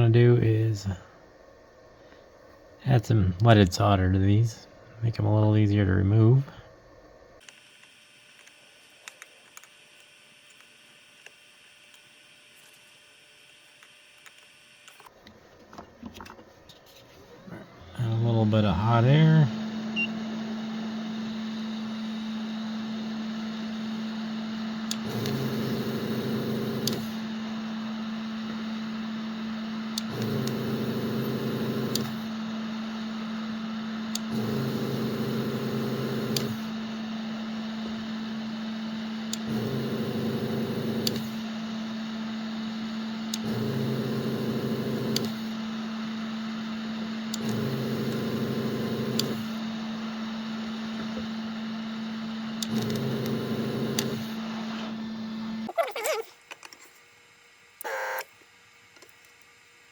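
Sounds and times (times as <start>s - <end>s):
soldering equipment humming: 0.0s - 55.8s, 57.4s - 59.9s
deeper buzzing hum: 17.5s - 55.7s.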